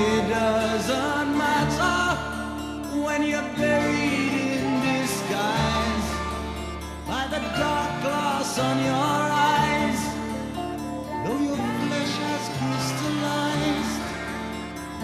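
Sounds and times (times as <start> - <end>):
person singing: 0.0 - 15.0.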